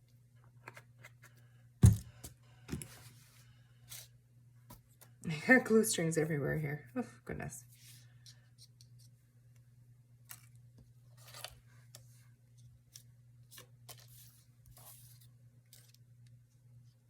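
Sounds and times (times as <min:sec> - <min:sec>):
paper rustling: 0:11.2 - 0:11.6, 0:12.9 - 0:16.0.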